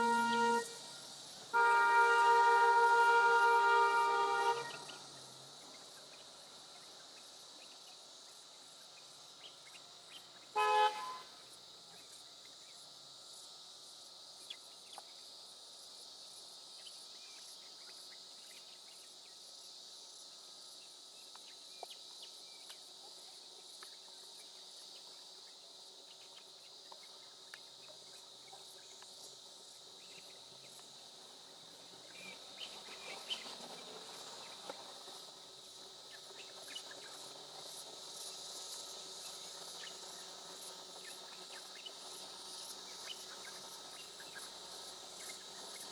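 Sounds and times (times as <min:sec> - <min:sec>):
vehicle horn blast: 0:00.0 - 0:00.9, 0:01.5 - 0:04.9, 0:10.6 - 0:11.3
insects chirring: 0:00.0 - 0:45.9.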